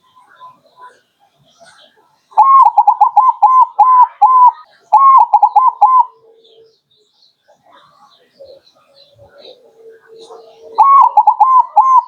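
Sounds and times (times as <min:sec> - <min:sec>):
dove cooing: 0:02.4 - 0:06.7, 0:08.4 - 0:12.0.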